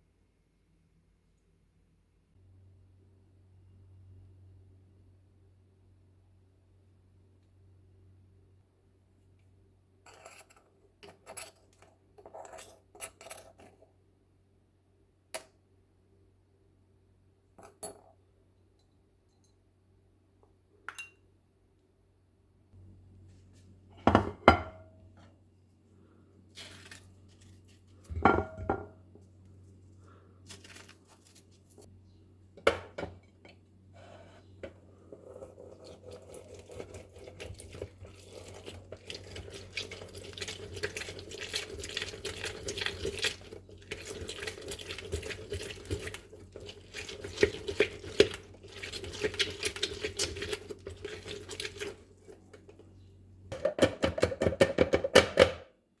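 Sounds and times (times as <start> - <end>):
dishes and utensils clattering: 28.1 - 28.9.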